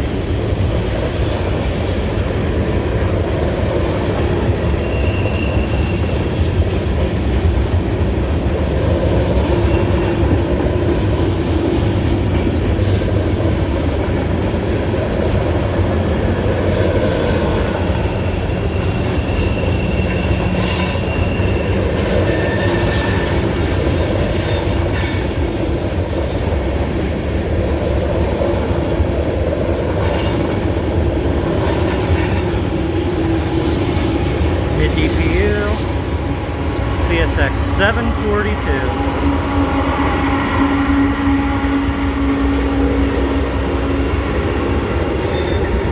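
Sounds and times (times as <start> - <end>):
freight train wheels rumbling on rail: 0.0 - 45.9
wheel squeals: 4.7 - 6.4, 18.0 - 25.4.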